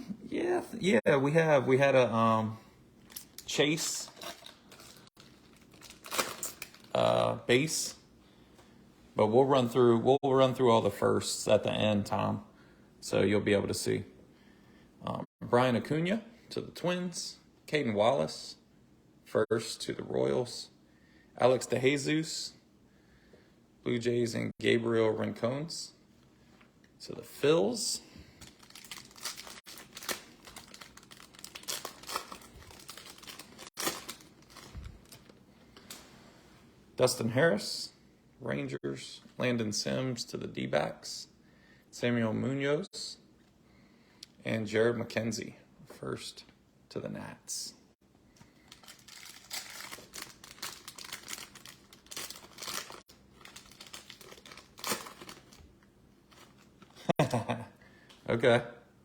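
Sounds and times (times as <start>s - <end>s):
foil wrapper crinkling: 3.1s - 7.1s, 28.4s - 36.0s, 48.5s - 57.1s.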